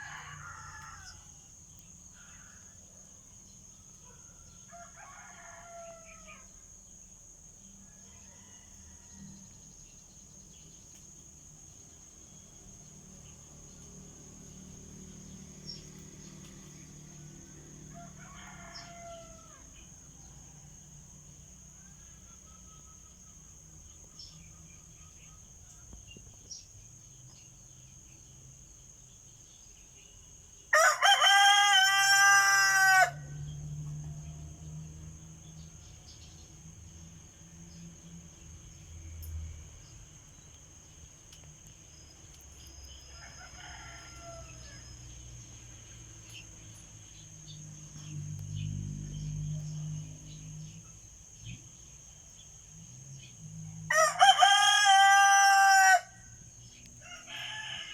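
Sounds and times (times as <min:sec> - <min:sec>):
rooster crowing: 0:00.0 - 0:01.5, 0:04.1 - 0:06.6, 0:07.8 - 0:09.6, 0:17.1 - 0:20.9, 0:21.7 - 0:23.5, 0:30.7 - 0:33.6, 0:42.8 - 0:45.1, 0:53.8 - 0:56.4, 0:57.0 - 0:57.9
distant rooster crowing: 0:00.0 - 0:01.6, 0:03.9 - 0:06.7, 0:07.8 - 0:09.7, 0:15.7 - 0:23.6, 0:30.7 - 0:34.6, 0:42.7 - 0:45.2, 0:53.8 - 0:57.9.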